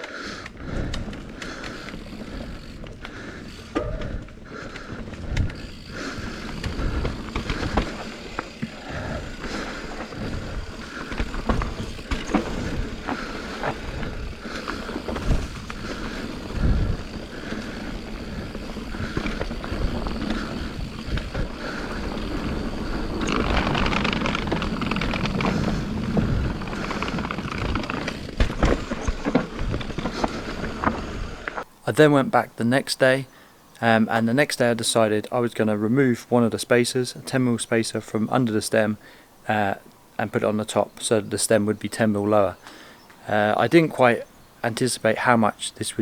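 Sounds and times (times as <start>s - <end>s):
bike knocking and rattling: 0.0s - 31.7s
bike tyres on dirt and rock: 0.0s - 46.0s.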